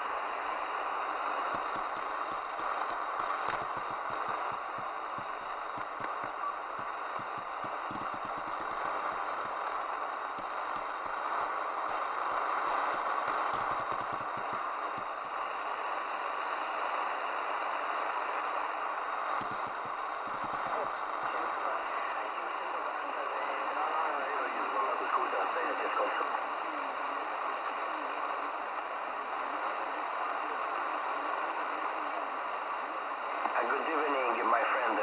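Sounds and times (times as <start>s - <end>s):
radio receiver hissing: 0.2s - 16.6s, 18.5s - 22.5s
sharp crackling clicks: 1.5s - 15.7s, 19.3s - 21.4s.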